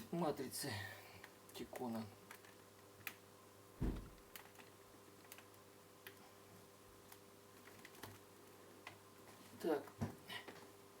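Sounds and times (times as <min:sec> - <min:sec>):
soft knock: 0:03.8 - 0:04.1.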